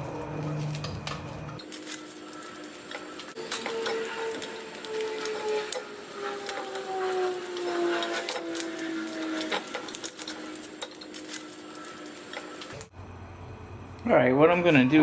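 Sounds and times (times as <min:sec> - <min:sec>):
small motor whirring: 0:01.6 - 0:12.9.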